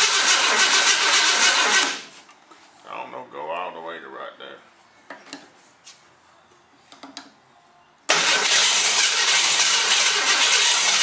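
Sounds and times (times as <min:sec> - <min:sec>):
loud car engine running: 0:08.1 - 0:11.0.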